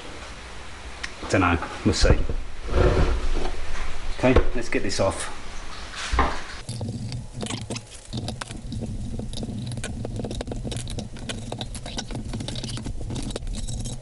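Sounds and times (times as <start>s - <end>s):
steady low hum: 0.0s - 14.0s
rapid clicking and rattling: 6.6s - 14.0s.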